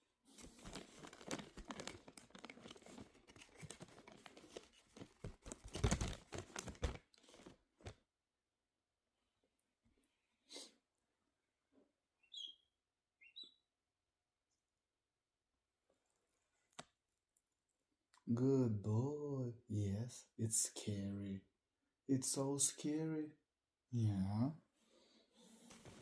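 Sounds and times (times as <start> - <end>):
crackly tearing and crinkling: 0.3 - 7.6.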